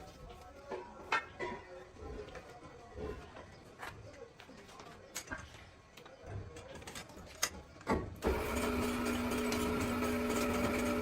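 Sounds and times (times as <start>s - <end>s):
workshop knocks and clicks: 6.2s - 8.5s
machine motor humming: 8.2s - 11.0s.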